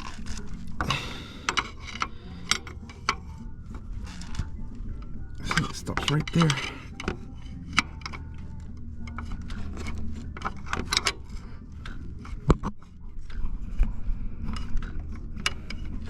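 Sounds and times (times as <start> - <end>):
steady low hum: 0.8 - 7.8.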